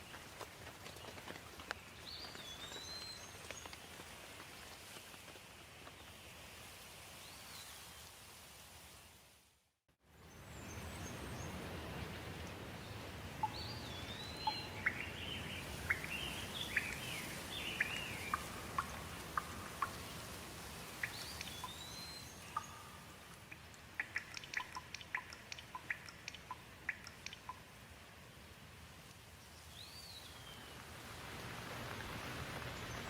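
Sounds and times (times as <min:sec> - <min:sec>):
steady rain: 0:00.0 - 0:09.5, 0:10.6 - 0:33.0
water drips ticking: 0:13.4 - 0:15.1, 0:15.8 - 0:27.8.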